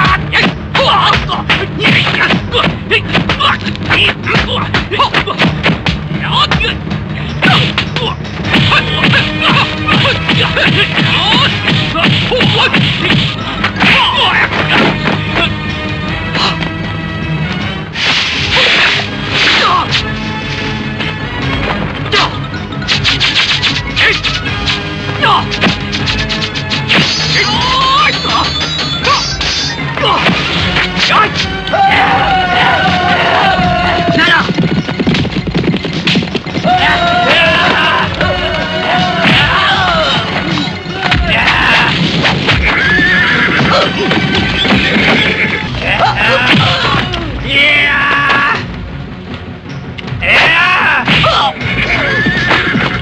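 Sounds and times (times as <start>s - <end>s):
background music: 0.0s - 53.0s
punch and kick impacts: 8.5s - 15.2s
sharp hits: 22.8s - 28.3s
shrill drawn-out cries: 31.6s - 34.4s, 36.6s - 41.9s.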